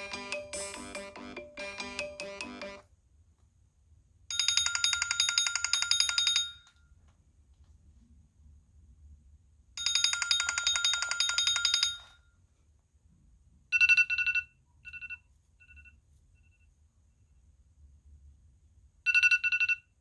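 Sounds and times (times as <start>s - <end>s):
trilling bell-like phone ring: 0.0s - 2.8s, 4.3s - 6.8s, 9.8s - 12.2s.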